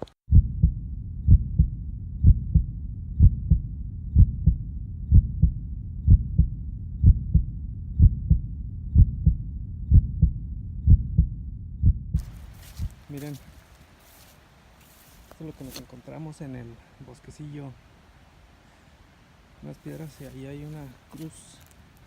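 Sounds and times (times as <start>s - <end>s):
heartbeat thumps: 0.3s - 13.8s
low rumble: 0.3s - 14.1s.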